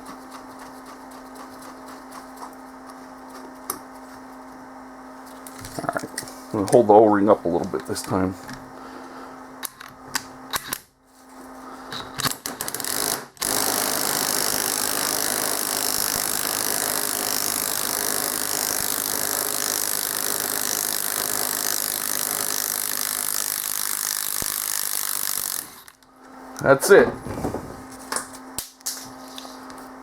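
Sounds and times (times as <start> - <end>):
power tool driving a bolt: 12.2 - 26.0.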